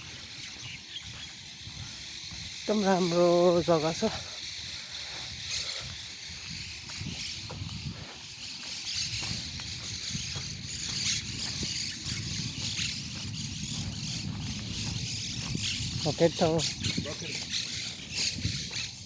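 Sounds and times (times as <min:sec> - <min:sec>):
birds chirping: 0:00.0 - 0:19.0
steady low rumble: 0:05.9 - 0:19.0.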